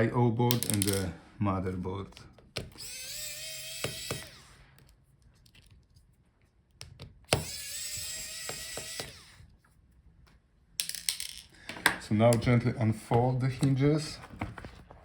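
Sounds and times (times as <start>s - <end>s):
metal screws and tools clicking: 0.5s - 1.1s, 2.2s - 5.9s, 6.7s - 9.4s
electric screwdriver whining: 2.6s - 4.8s, 7.2s - 9.5s.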